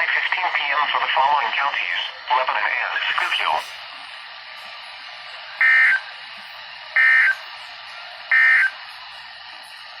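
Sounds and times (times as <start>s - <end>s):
radio hiss: 0.0s - 4.8s.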